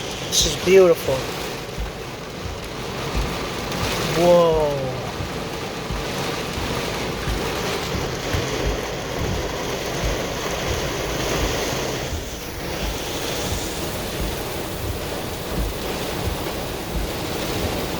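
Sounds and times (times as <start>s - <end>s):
gusting storm wind: 0.0s - 17.9s
heavy rain: 0.0s - 17.9s
wind buffeting microphone: 0.0s - 17.9s.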